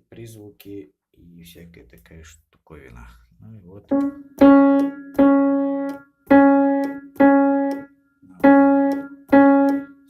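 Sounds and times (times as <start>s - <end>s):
piano note struck: 3.9s - 10.0s.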